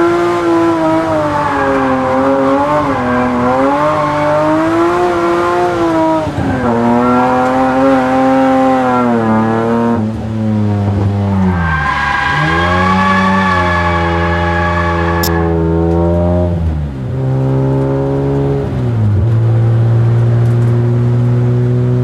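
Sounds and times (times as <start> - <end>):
car engine revving hard: 0.0 - 16.6.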